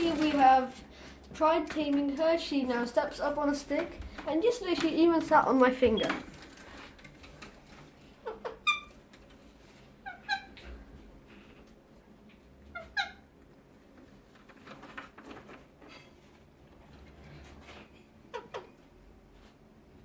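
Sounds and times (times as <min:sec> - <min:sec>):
parrot chirping: 0:08.2 - 0:09.0, 0:10.0 - 0:10.6, 0:12.7 - 0:13.3.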